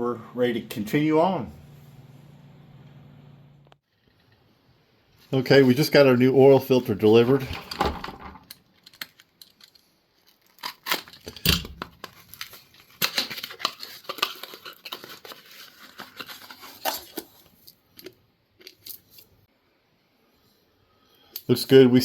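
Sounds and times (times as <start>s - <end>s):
packaging tearing and crinkling: 8.5s - 19.3s.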